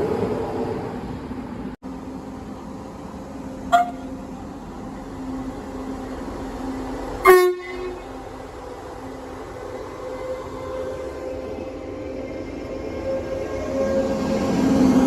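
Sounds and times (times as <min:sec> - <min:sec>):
train humming: 0:00.0 - 0:15.0
train horn toots: 0:03.7 - 0:04.2, 0:07.2 - 0:08.2.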